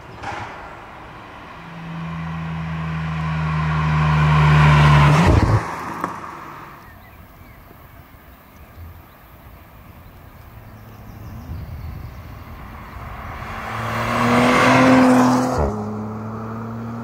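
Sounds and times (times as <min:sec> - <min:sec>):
car engine passing by: 0:01.0 - 0:07.0, 0:10.6 - 0:17.0.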